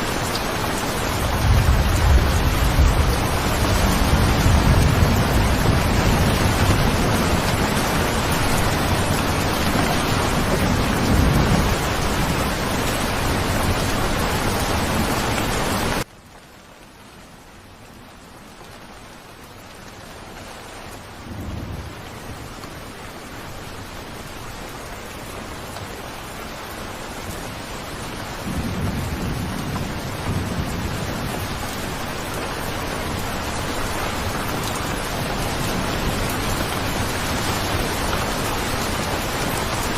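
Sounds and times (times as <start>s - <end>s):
heavy rain: 0.0s - 39.9s
low rolling thunder: 1.1s - 15.8s, 21.2s - 22.6s, 28.4s - 39.9s.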